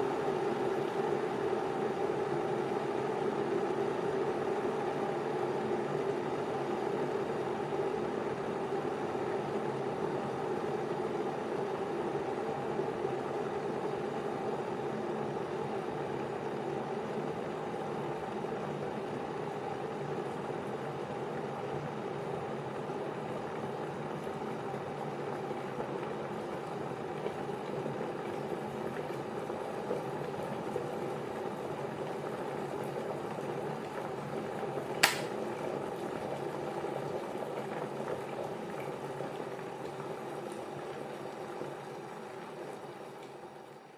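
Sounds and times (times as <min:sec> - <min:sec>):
kettle water boiling: 0:00.0 - 0:43.9
kettle switch click: 0:35.0 - 0:35.3.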